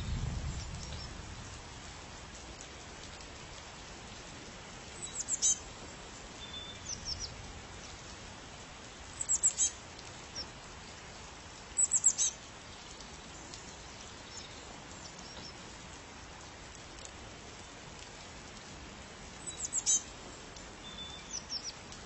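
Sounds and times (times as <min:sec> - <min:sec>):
rain hiss: 0:00.0 - 0:22.0
small bird chirping: 0:05.0 - 0:05.6, 0:09.2 - 0:09.8, 0:11.8 - 0:12.9, 0:19.4 - 0:20.0, 0:20.8 - 0:21.8.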